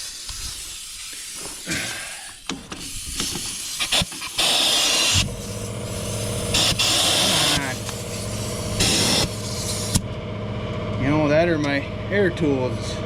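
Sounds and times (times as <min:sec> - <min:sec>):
compressed air hissing: 0:00.0 - 0:10.0
air compressor motor humming: 0:00.8 - 0:13.0.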